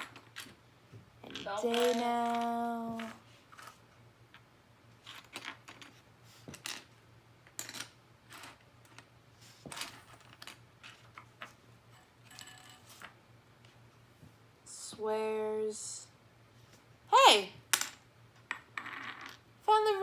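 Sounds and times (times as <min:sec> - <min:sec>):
plastic toy bricks clicking and rattling: 0:01.2 - 0:03.7.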